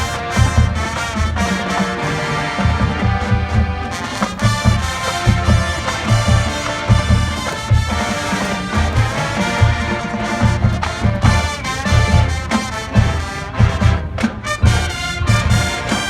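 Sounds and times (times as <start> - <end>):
brass chords: 0.0 - 16.0.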